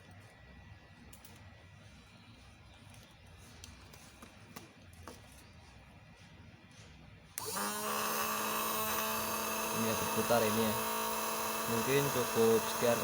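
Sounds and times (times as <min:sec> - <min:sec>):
pump motor whining: 0:07.4 - 0:13.0.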